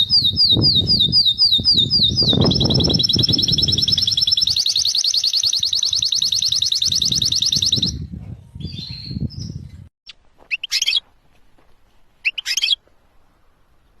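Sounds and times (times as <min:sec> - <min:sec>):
canary singing: 0:00.0 - 0:08.0, 0:12.2 - 0:12.8.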